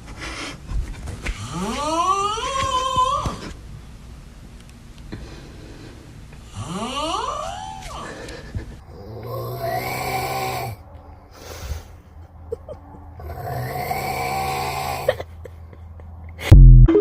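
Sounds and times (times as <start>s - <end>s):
quiet breaths: 5.0s - 9.4s, 10.5s - 12.4s
person snoring loudly: 6.5s - 7.6s, 8.9s - 10.8s, 13.2s - 15.2s.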